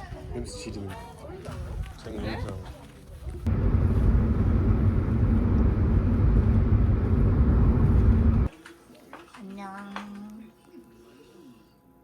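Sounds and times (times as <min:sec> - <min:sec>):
low vehicle rumble: 0:03.5 - 0:08.5.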